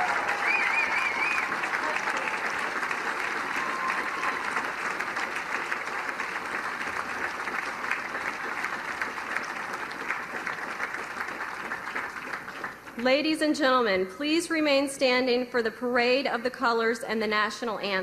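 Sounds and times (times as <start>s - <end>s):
large audience applauding: 0.0s - 13.0s.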